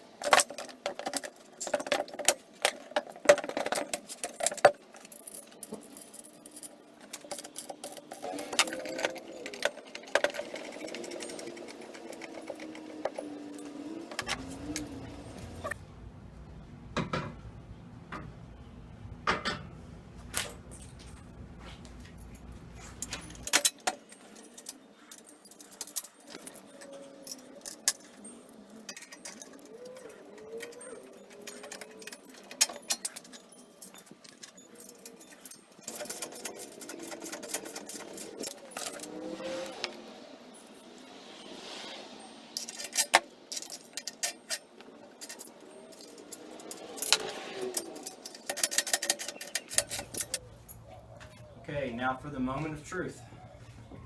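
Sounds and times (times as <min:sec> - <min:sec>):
wrench clinking on metal: 0:00.0 - 0:15.8, 0:23.0 - 0:41.4, 0:42.5 - 0:50.4.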